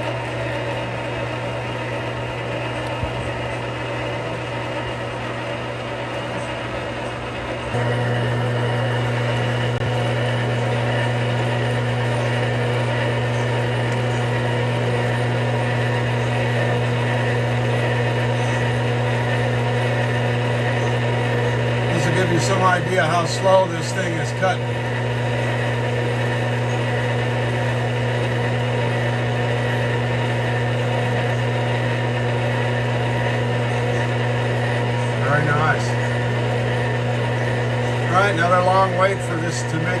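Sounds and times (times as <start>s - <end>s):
metal lathe humming: 7.7s - 40.0s
boring bar cutting steel: 7.8s - 31.3s.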